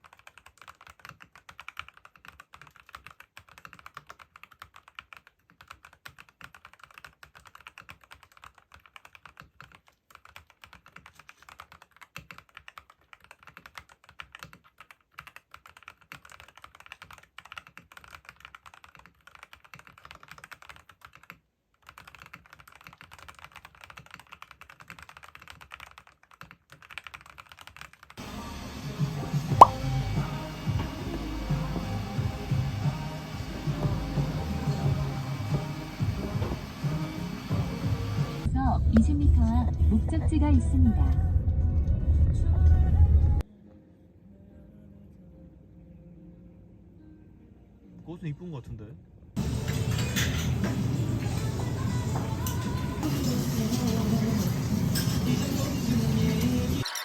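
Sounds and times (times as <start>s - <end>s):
background music: 28.2s - 57.0s.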